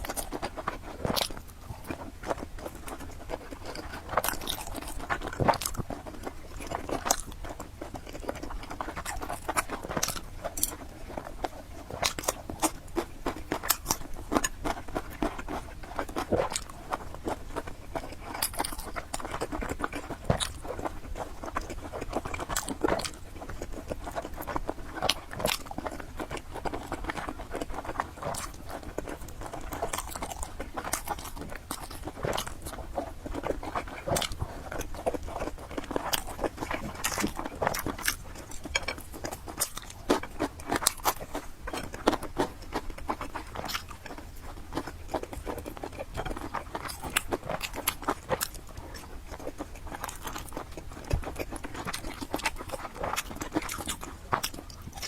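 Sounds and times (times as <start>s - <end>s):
chewing and biting food: 0.0s - 55.0s
food crunching: 0.0s - 55.0s.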